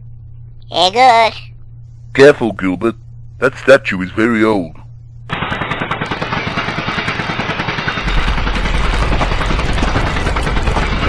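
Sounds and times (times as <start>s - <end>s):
deep rumble: 0.0s - 0.8s, 1.5s - 5.4s, 7.4s - 11.0s.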